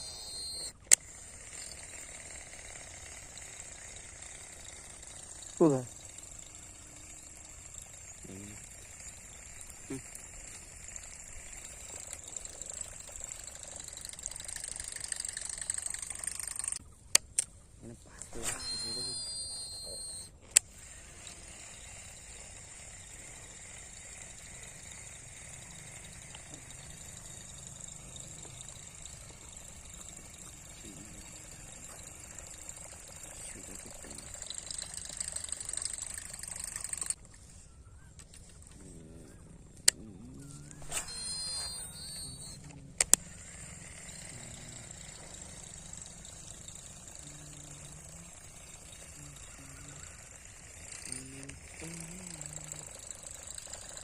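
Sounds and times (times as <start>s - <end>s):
faint low hum: 4.4s - 13.3s, 16.8s - 24.7s, 25.6s - 34.5s, 37.1s - 53.5s
sharp clicks: 9.5s - 17.6s, 18.2s - 21.4s, 33.9s - 37.4s, 39.6s - 50.0s
sharp click: 15.4s - 17.5s, 18.2s - 20.7s.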